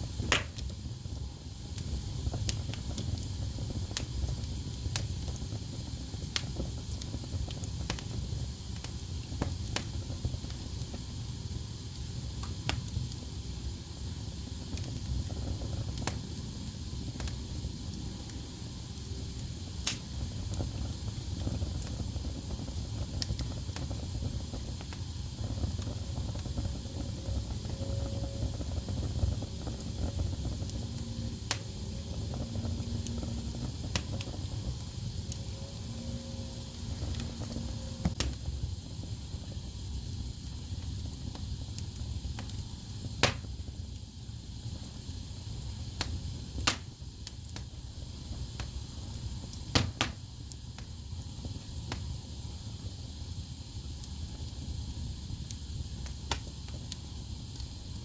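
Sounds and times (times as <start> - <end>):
fire rumbling and hissing: 0.0 - 58.0
logs crackling and popping: 0.1 - 13.7, 14.4 - 44.0, 44.7 - 52.2, 54.0 - 58.0.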